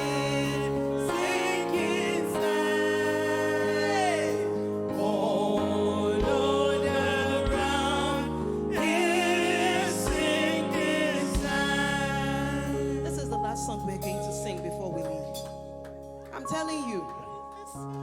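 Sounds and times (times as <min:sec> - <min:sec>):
people singing: 0:00.0 - 0:13.4
sustained keyboard chords: 0:00.0 - 0:18.0
low drum beats: 0:06.2 - 0:06.8, 0:07.4 - 0:09.0, 0:10.0 - 0:17.2.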